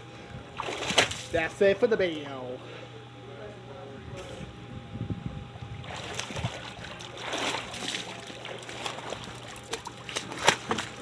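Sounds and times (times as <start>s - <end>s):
water splashing on microphone: 5.6s - 11.0s.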